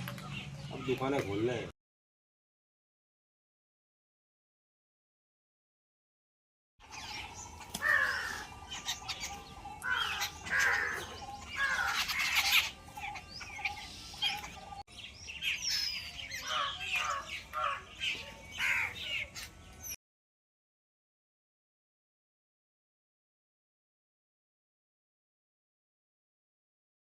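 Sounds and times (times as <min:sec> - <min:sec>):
flock of birds chirping: 0:00.0 - 0:01.7, 0:06.8 - 0:20.0.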